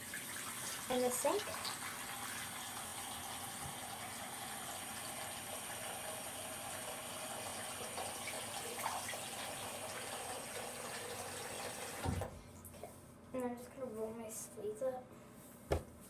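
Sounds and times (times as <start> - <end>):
water running from a tap into a sink: 0.0 - 12.3.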